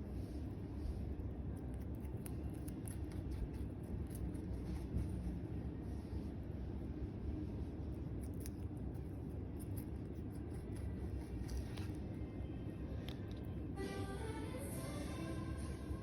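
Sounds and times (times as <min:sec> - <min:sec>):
rabbit chewing crunching: 0:00.0 - 0:14.2
music: 0:12.2 - 0:16.0.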